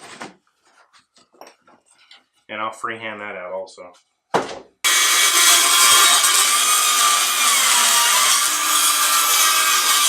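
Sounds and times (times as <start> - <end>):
power saw cutting wood: 4.8 - 10.0.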